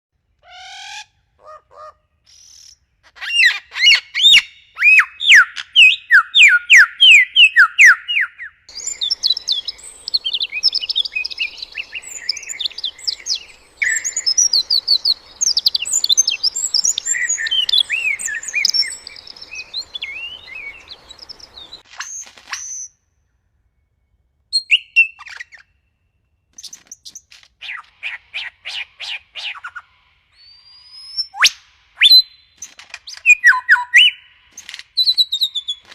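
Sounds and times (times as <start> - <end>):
birds chirping and whistling: 3.2 - 21.8, 27.6 - 29.8, 30.4 - 35.9
steady background hiss: 8.7 - 21.8.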